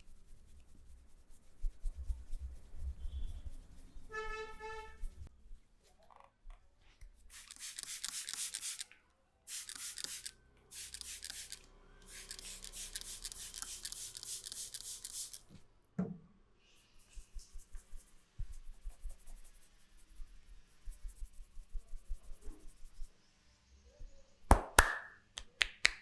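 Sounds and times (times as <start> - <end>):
hands rubbing hair and scalp: 0.0 - 5.3, 9.5 - 15.5, 16.9 - 23.1.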